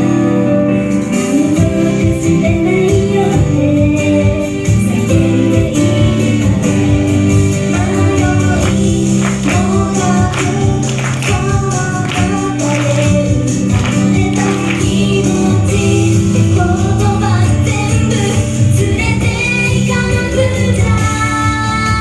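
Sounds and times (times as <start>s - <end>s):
instrumental backing music: 0.0s - 22.0s
female voices singing together: 7.9s - 19.6s.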